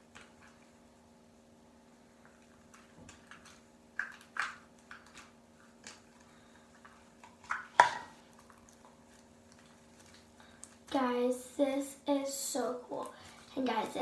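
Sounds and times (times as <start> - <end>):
slime squelching: 2.2 - 14.0.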